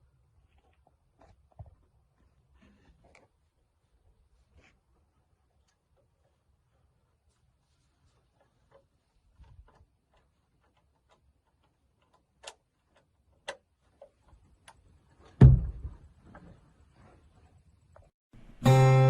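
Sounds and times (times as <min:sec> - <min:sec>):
loud heavy thump: 0:15.4 - 0:16.0.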